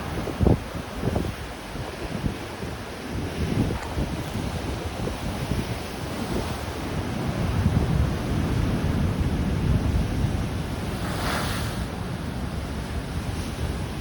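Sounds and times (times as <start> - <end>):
rough sea surf: 0.0 - 14.0
wind buffeting microphone: 0.0 - 14.0
rushing hiss: 11.0 - 11.9.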